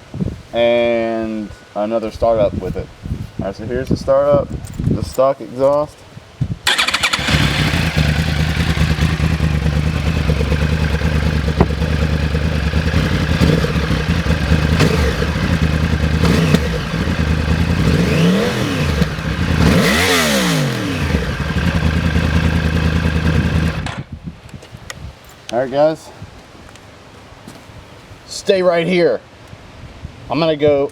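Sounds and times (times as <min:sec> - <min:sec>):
motorcycle engine idling and revving: 0:06.7 - 0:24.1.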